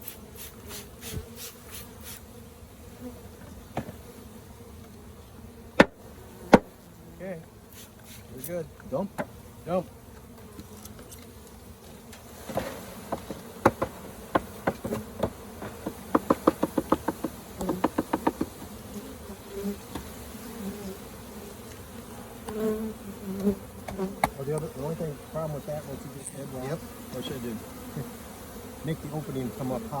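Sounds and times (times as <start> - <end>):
honeybees buzzing: 0.0 - 30.0
bee package knocks: 5.8 - 6.7, 12.5 - 18.7, 23.4 - 24.4.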